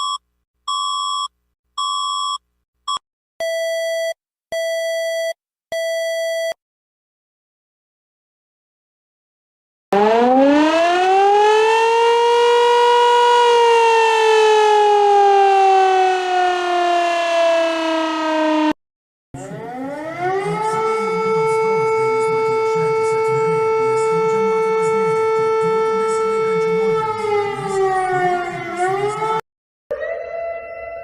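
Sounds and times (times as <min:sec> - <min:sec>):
civil defense siren winding: 0:10.0 - 0:18.8, 0:19.4 - 0:31.0.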